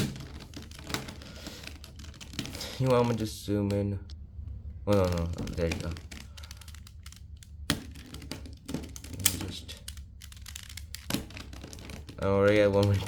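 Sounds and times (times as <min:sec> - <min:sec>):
puzzle cube pieces clicking: 0:04.9 - 0:13.0.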